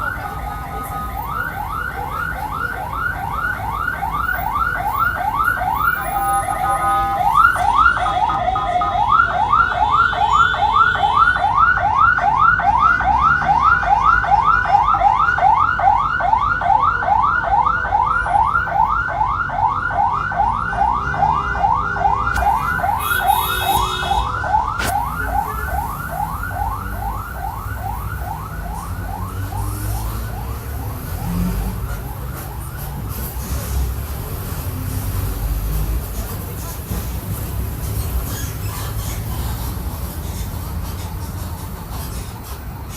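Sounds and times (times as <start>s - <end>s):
electronic siren sweeping: 20.3s - 33.1s.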